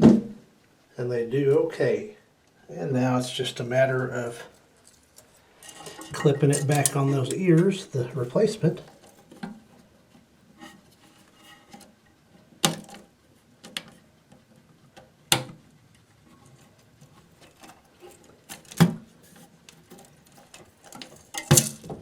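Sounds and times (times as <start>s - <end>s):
handling noise: 4.6s - 11.8s, 16.4s - 22.0s.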